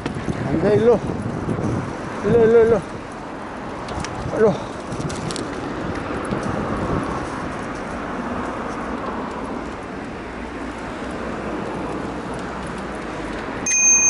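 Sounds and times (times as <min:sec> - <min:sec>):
distant road traffic: 0:00.0 - 0:14.0
loud high-pitched beep: 0:13.6 - 0:14.0.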